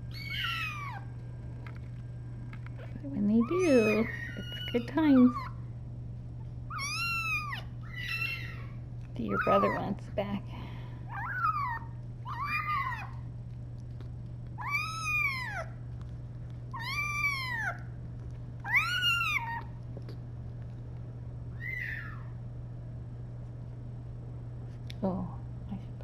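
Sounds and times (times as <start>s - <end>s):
steady low hum: 0.0s - 26.0s
kitten meowing: 0.1s - 1.1s, 3.4s - 5.6s, 6.7s - 8.6s, 11.1s - 13.2s, 14.6s - 15.8s, 16.8s - 17.8s, 18.6s - 19.8s, 21.6s - 22.3s.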